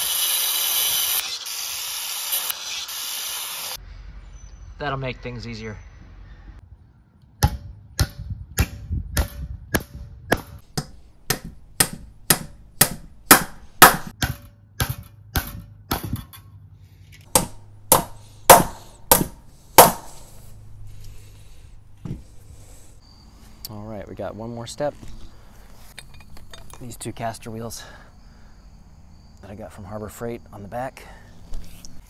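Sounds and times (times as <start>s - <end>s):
hammer striking steel: 7.4s - 16.0s, 17.3s - 20.5s.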